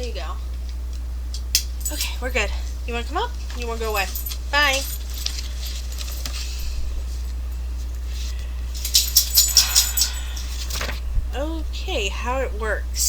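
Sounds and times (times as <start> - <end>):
low electrical hum: 0.0 - 13.0
dog collar jingling: 1.6 - 10.8.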